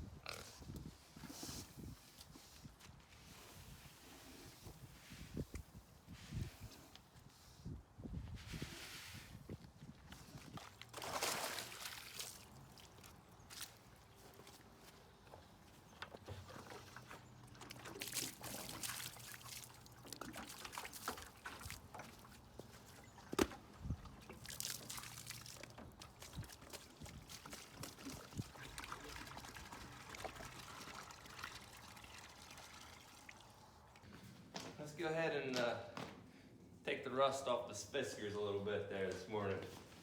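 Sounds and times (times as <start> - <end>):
water pouring and trickling: 16.6 - 23.1, 23.9 - 34.0.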